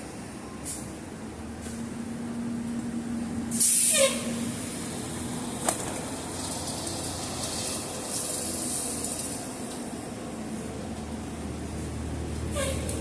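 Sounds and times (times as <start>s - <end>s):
compressed air hiss: 3.5s - 4.4s.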